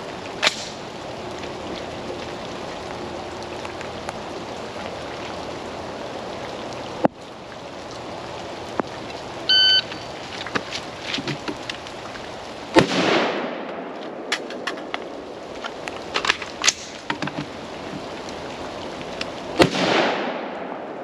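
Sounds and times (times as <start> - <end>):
steady rain: 0.0 - 21.0
shot timer start beep: 9.5 - 10.1.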